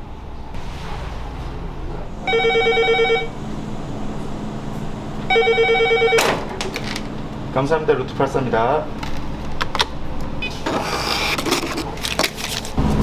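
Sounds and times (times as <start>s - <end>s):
telephone ringing: 2.2s - 3.4s, 5.3s - 6.4s.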